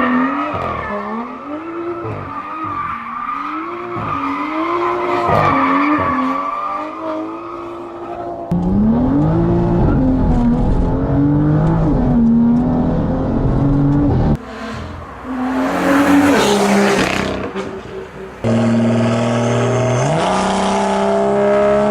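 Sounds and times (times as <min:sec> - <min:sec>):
car engine revving: 0:08.4 - 0:21.9.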